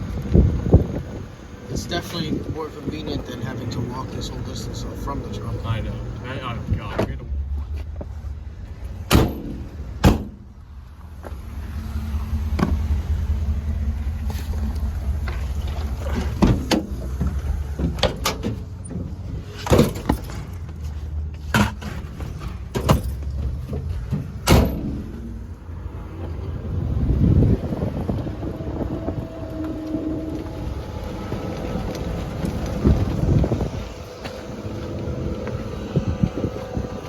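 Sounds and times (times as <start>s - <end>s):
knocks and rattles over bumps: 6.6s - 37.0s
golf cart motor humming: 10.6s - 18.4s, 25.0s - 37.0s.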